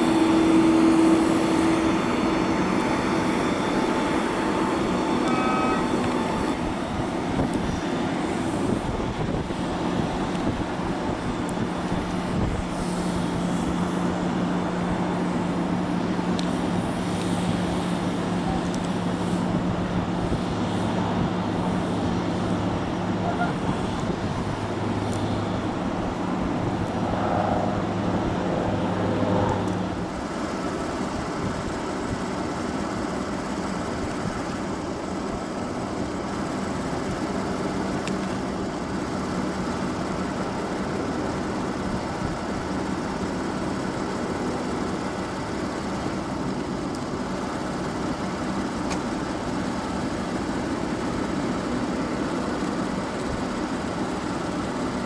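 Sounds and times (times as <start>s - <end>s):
motor vehicle running: 0.0s - 31.4s.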